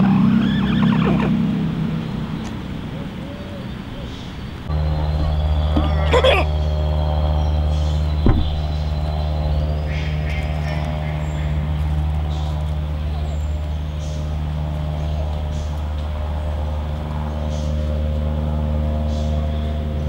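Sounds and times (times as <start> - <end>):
low machine hum: 0.0 - 20.0
chicken sneezing: 5.9 - 6.6.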